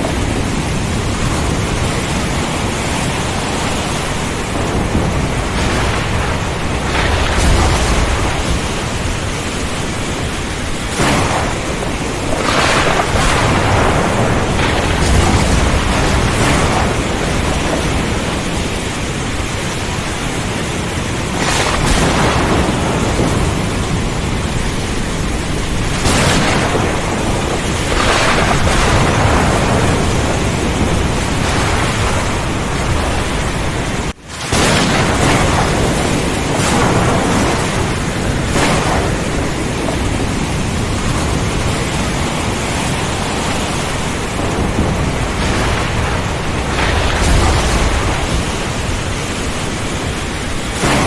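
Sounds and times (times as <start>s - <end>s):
heavy rain pouring: 0.0s - 51.0s
thunder cracking and rolling: 0.0s - 51.0s.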